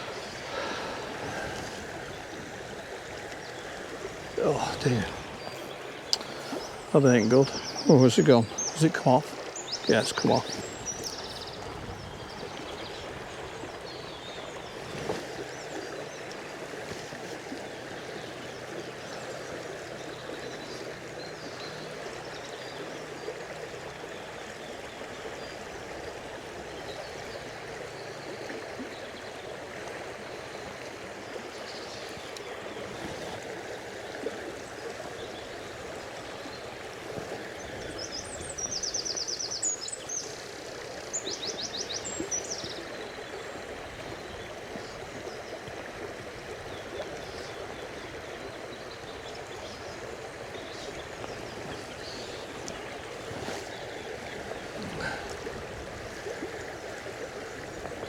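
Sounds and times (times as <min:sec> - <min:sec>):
river water rushing over rocks: 0:00.0 - 0:21.2, 0:40.4 - 0:58.0.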